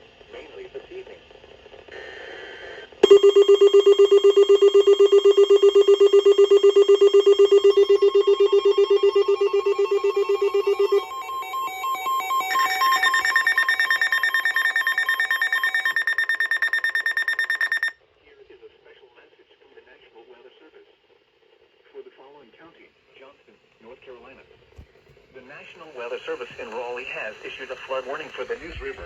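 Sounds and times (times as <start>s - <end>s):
pulsing electronic alarm tone: 3.0s - 18.0s.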